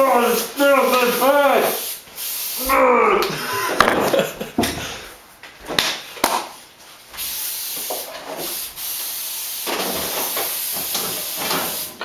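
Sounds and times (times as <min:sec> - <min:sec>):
aerosol can spraying: 0:00.0 - 0:02.8, 0:07.2 - 0:12.0.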